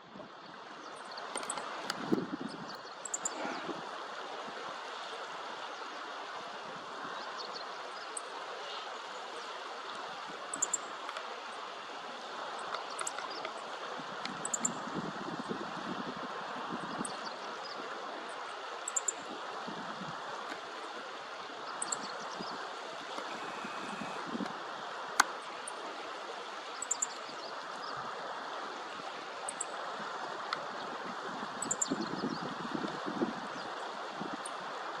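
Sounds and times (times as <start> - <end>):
small birds chirping: 21.7 - 24.3.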